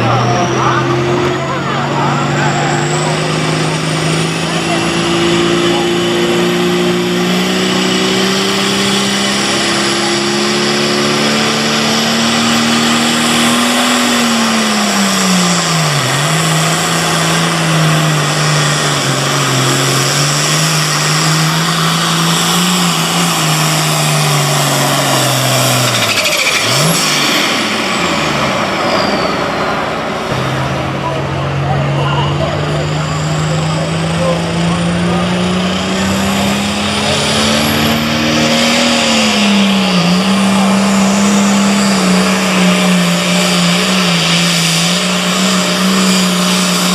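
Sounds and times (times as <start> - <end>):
tractor diesel engine running hard: 0.0 - 46.9.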